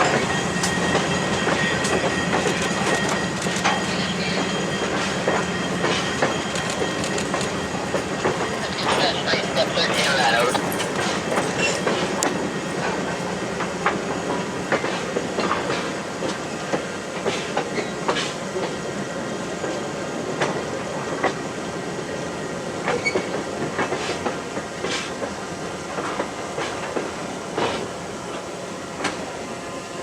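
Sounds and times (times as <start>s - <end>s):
wheels clicking on rails: 0.0s - 18.8s
train rumbling on track: 0.0s - 30.0s.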